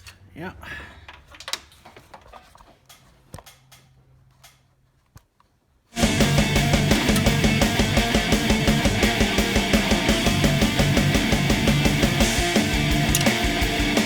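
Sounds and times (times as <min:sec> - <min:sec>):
heavy rock music: 0:06.0 - 0:14.0.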